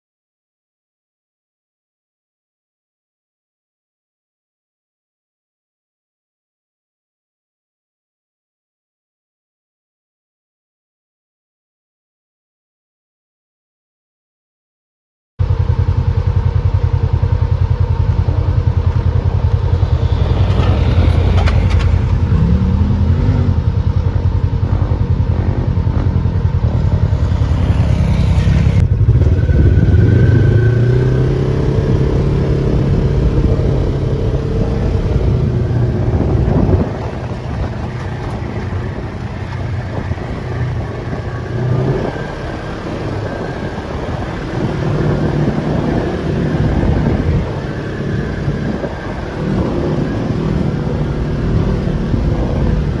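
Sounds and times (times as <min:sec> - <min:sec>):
off-road vehicle engine revving: 0:15.4 - 0:53.0.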